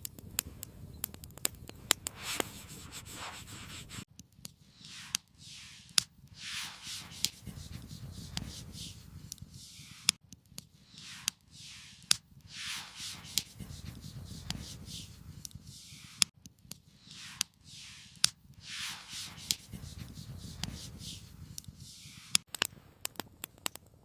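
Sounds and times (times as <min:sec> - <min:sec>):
campfire crackling and popping: 0:00.0 - 0:02.9, 0:07.0 - 0:24.0
rustling scraping swishes: 0:02.0 - 0:04.1, 0:04.8 - 0:10.2, 0:10.9 - 0:16.3, 0:17.0 - 0:22.4.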